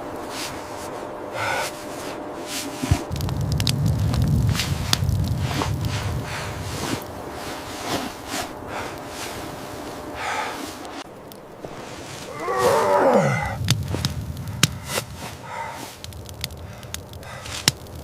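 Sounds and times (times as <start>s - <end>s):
sharp clicks and crackles: 2.9s - 9.6s, 10.8s - 18.0s.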